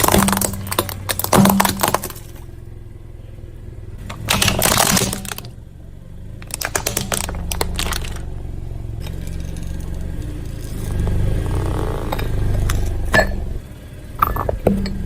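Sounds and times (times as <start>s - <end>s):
tyre crushing brittle objects: 0.0s - 2.5s, 4.0s - 5.6s, 6.4s - 8.3s
car engine rumbling: 0.0s - 15.0s.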